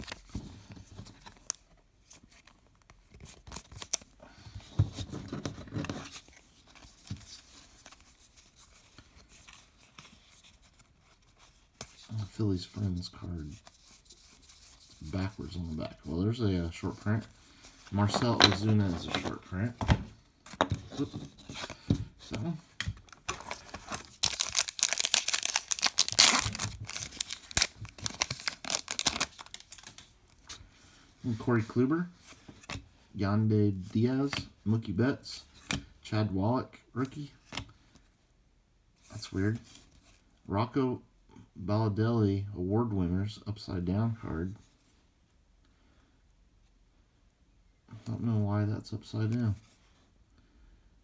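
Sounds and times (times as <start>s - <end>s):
cards rustling: 13.2s - 30.6s
cards shuffling clicks: 21.6s - 30.1s
wrapper crinkling and tearing: 23.2s - 30.1s.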